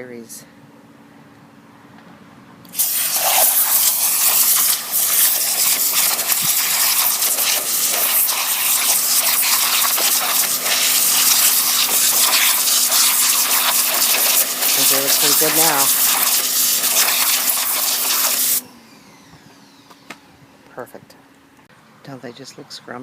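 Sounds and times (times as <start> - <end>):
steady low hum: 0.0 - 22.4
pressure washer jet spraying: 2.7 - 18.6.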